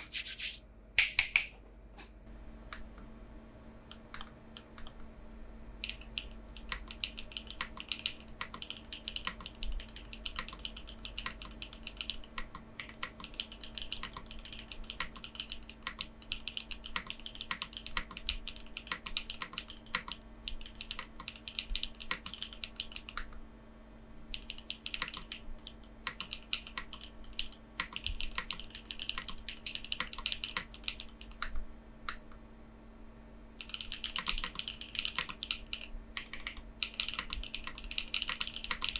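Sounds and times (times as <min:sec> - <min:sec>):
mechanical keyboard typing: 0:05.8 - 0:23.1, 0:24.4 - 0:25.4, 0:26.0 - 0:31.5, 0:33.6 - 0:38.9.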